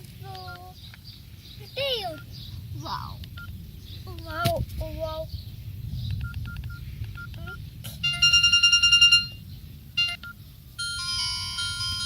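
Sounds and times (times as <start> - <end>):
fast-pulsing electronic ringtone: 8.0 - 9.4, 10.0 - 12.0
ringtone melody: 8.0 - 9.4, 10.0 - 12.0
short key beep: 8.0 - 9.4.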